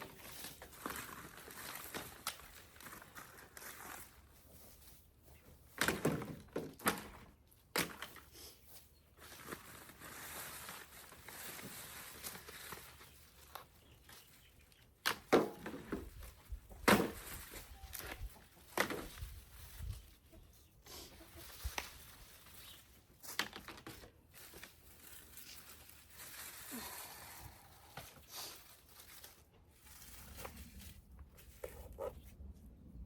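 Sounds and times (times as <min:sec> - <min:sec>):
soft dry rustle: 0:00.1 - 0:05.8, 0:16.1 - 0:33.0
knocks and thuds of dried gourds: 0:05.5 - 0:08.4, 0:15.0 - 0:20.0, 0:21.6 - 0:25.6.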